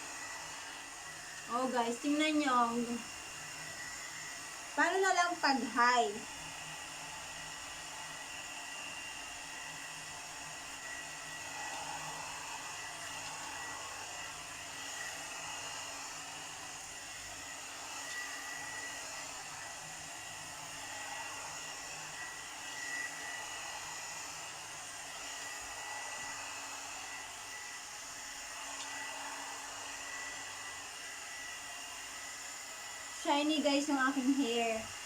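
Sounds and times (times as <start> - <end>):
hot-air brush blowing with motor whine: 0.0 - 35.0.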